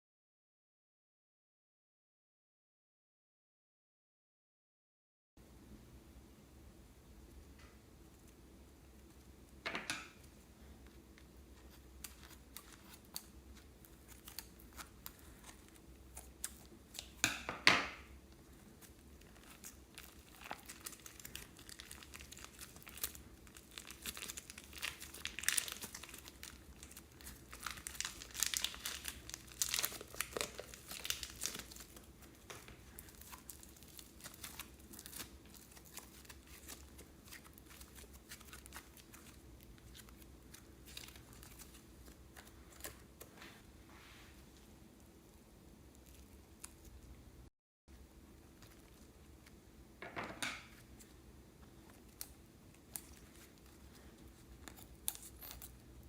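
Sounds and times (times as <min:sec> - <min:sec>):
plastic bags crinkling: 0:18.4 - 0:43.3.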